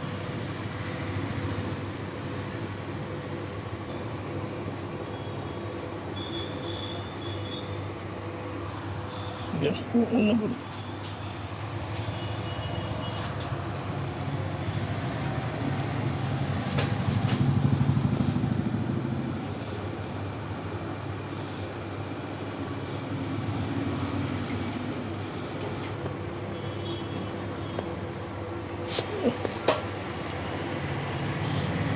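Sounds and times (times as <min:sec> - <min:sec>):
vehicle engine running: 0:13.4 - 0:20.2.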